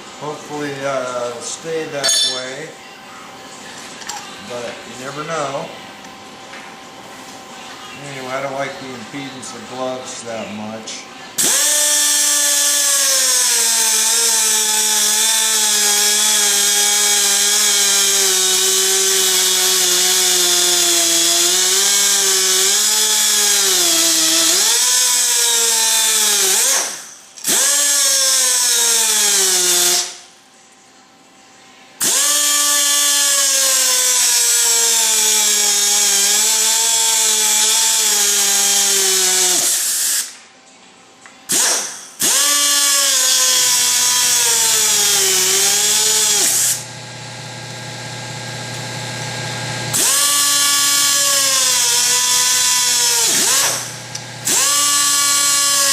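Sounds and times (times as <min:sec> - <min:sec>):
power tool motor whine: 0:11.4 - 0:30.2, 0:32.0 - 0:40.3, 0:41.5 - 0:55.9.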